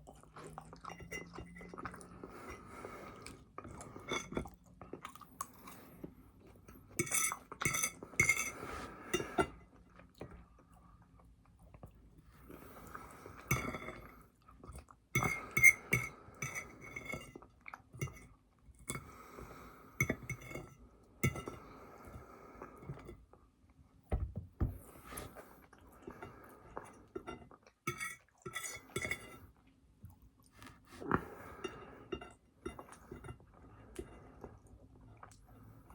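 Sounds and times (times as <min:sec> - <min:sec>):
chewing: 0:03.1 - 0:06.1, 0:30.1 - 0:31.7.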